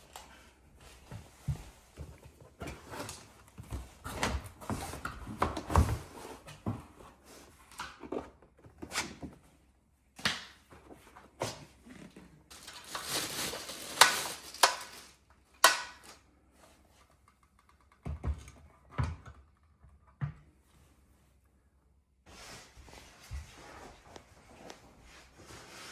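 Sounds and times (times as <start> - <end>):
packaging rustling: 12.5 - 15.3
knocks and clunks of handling: 16.9 - 20.7.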